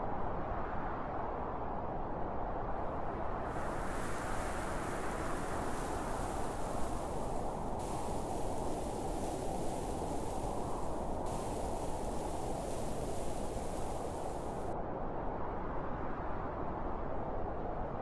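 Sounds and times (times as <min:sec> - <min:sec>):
steady wind rushing: 0:03.0 - 0:14.7.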